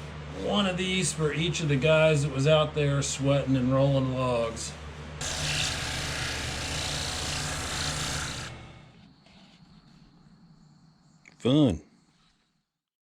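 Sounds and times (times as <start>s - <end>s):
sandpaper hiss on spinning wood: 5.2s - 8.6s
lathe motor hum: 5.2s - 9.0s.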